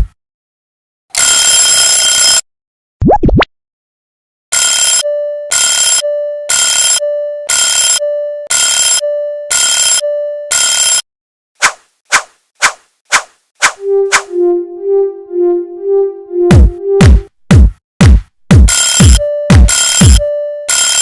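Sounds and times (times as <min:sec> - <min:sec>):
rising sweep: 0:13.8 - 0:17.0.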